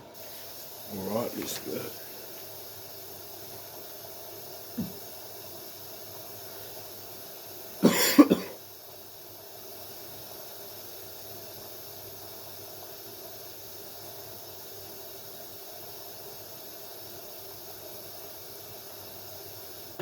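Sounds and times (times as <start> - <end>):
low hum and hiss: 0.0 - 20.0
person coughing: 7.8 - 8.6.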